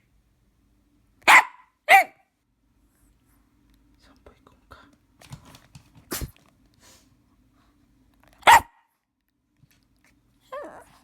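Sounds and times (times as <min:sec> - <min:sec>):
puppy barking: 0:01.2 - 0:02.3, 0:08.4 - 0:08.9.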